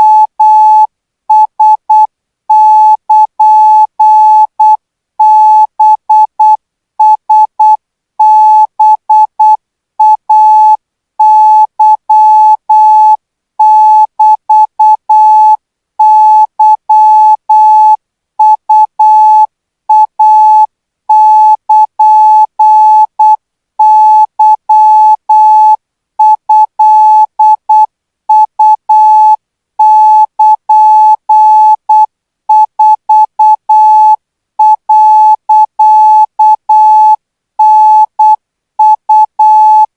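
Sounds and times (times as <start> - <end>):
morse code beeps: 0.0 - 39.9.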